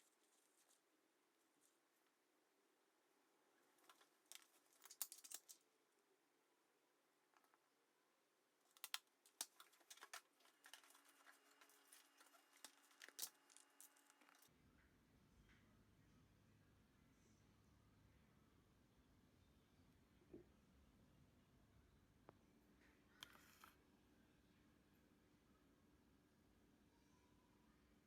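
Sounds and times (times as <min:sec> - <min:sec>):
craft materials clicking and crinkling: 0:03.8 - 0:05.7, 0:08.6 - 0:14.5.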